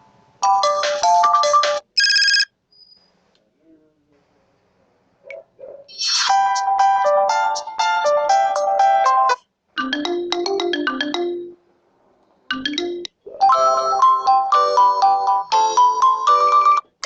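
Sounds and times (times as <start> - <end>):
bell-like electronic ringtones: 12.5 - 16.9.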